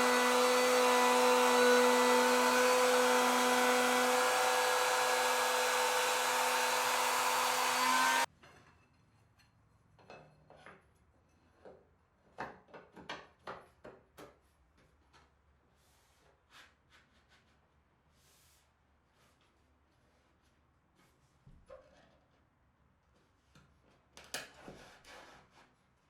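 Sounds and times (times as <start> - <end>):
power tool motor running: 0.0 - 8.3
wood and tools knocking: 0.0 - 8.3.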